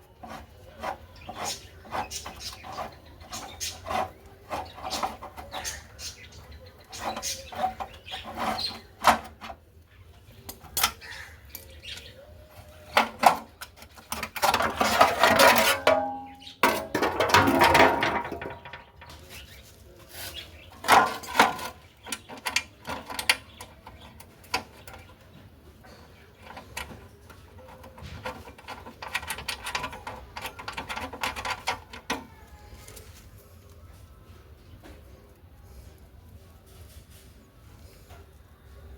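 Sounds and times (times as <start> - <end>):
metal scraping: 0.0 - 9.7, 10.3 - 33.2
tools and metal parts clinking: 10.4 - 19.2, 20.7 - 25.2, 25.8 - 33.0.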